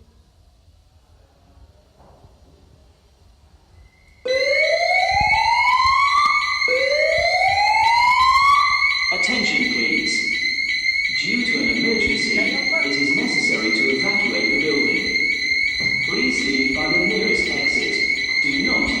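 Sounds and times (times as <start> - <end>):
fire alarm whoops: 3.9 - 19.0
steady high alarm tone: 4.2 - 19.0.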